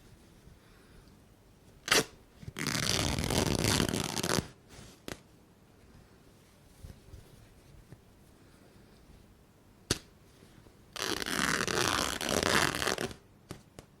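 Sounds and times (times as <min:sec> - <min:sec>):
fabric ripping: 0:01.8 - 0:04.6, 0:11.0 - 0:13.2.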